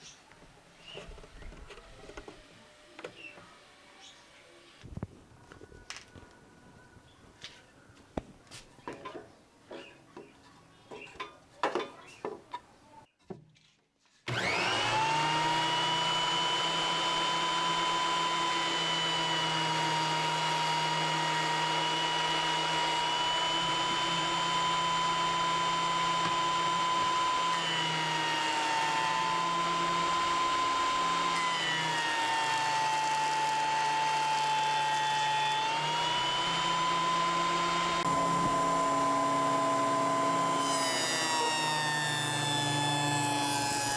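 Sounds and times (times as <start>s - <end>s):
jointer motor whining: 14.3s - 43.9s.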